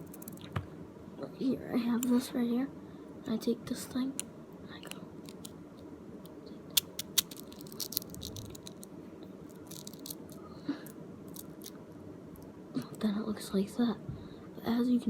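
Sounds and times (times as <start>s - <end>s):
magnets clicking together: 0.0s - 0.5s, 6.7s - 8.9s, 9.6s - 10.4s
magnets snapping: 0.0s - 0.5s, 4.9s - 5.6s, 6.2s - 8.9s, 9.5s - 10.4s, 11.3s - 11.8s.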